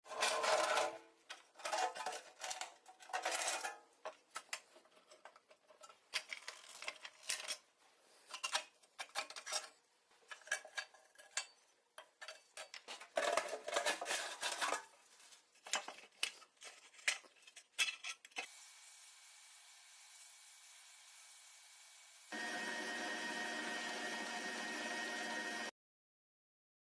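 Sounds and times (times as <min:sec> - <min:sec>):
metal tools clinking and clattering: 0:15.7 - 0:18.4.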